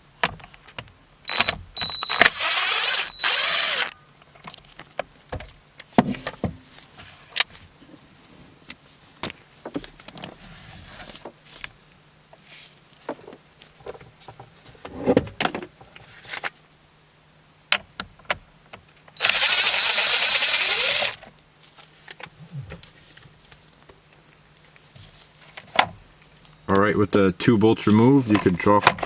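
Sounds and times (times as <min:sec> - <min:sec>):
cordless power driver whining: 0:01.3 - 0:04.0, 0:19.2 - 0:21.2.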